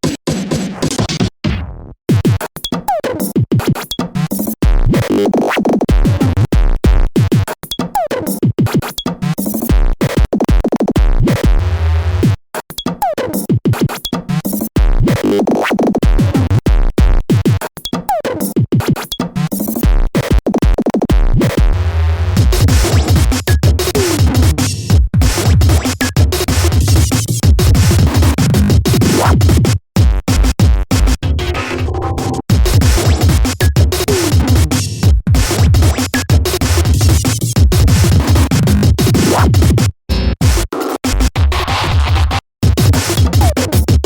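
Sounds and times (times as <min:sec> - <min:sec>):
drum machine beat: 0:02.1 - 0:05.1, 0:05.7 - 0:11.6, 0:12.3 - 0:15.3, 0:15.9 - 0:21.8, 0:22.4 - 0:44.0
choppy synthesizer samples: 0:21.4 - 0:44.0.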